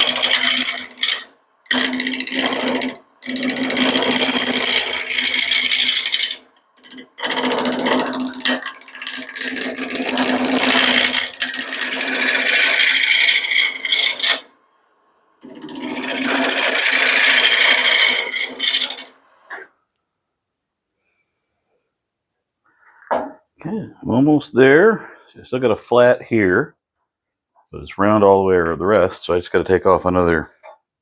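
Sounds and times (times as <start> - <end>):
lathe tool rattling cut on wood: 0.0 - 14.5, 15.4 - 19.1
steady lathe hum: 0.0 - 14.6, 15.4 - 19.6.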